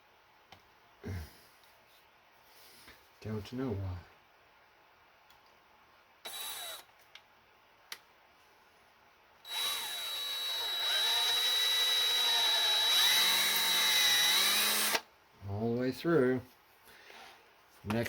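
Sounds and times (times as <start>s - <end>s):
power drill whining: 6.3s - 6.9s, 9.4s - 15.0s.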